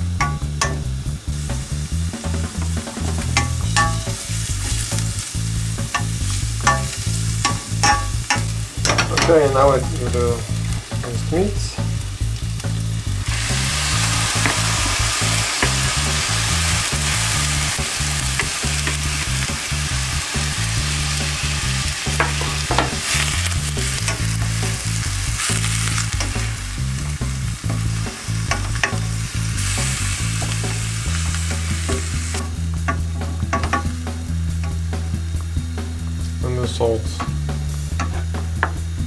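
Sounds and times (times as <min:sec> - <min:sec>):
meat and onions sizzling in pan: 0:00.0 - 0:39.0.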